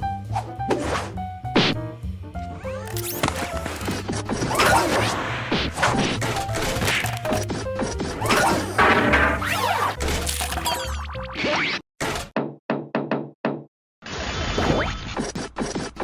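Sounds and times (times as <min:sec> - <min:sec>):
background music: 0:00.0 - 0:11.4
cartoon crashes and whacks: 0:04.1 - 0:07.1, 0:08.1 - 0:10.3.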